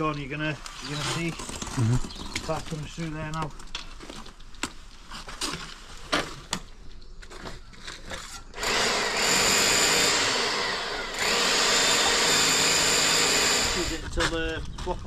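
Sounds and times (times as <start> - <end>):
electric drill boring: 8.6 - 14.0.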